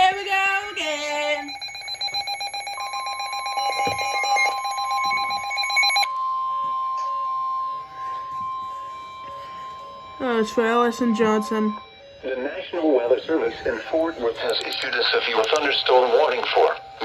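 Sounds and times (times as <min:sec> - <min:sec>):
steady alarm tone: 0:00.0 - 0:17.0
rapid electronic pulsing: 0:07.8 - 0:17.0.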